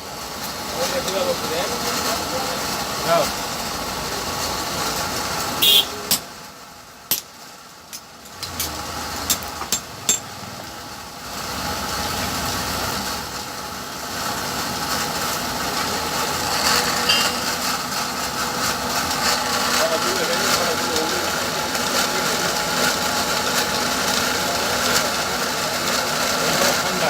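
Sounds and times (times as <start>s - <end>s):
machine drone: 14.0s - 20.5s.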